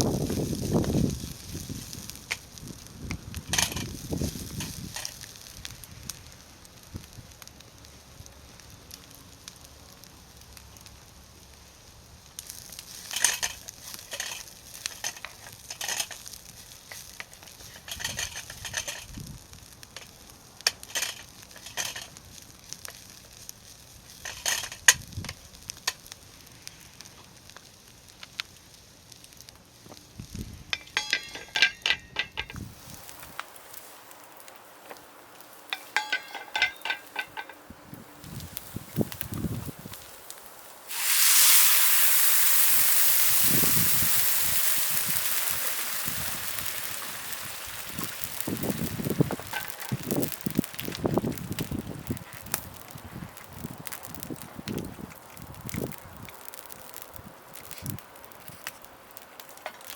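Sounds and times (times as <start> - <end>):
food sizzling in a skillet: 0.0 - 6.2, 12.4 - 19.7, 32.6 - 59.9
utensil scraping and tapping pan: 35.7 - 37.6.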